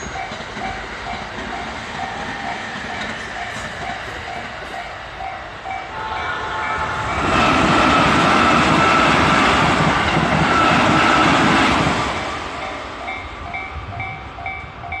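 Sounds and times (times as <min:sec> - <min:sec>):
train passing: 0:00.0 - 0:15.0
level crossing warning bell: 0:12.6 - 0:15.0.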